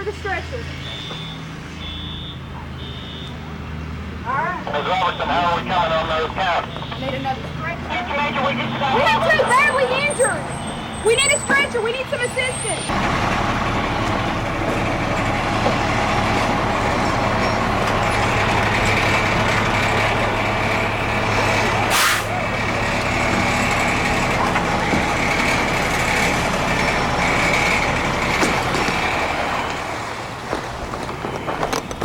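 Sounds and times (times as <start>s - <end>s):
truck engine running: 0.0s - 32.0s
short air hiss: 21.9s - 22.3s.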